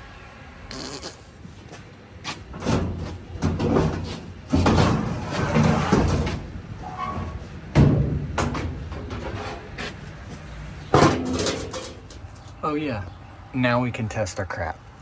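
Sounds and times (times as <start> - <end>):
dryer parts knocking and scraping: 1.2 - 12.6.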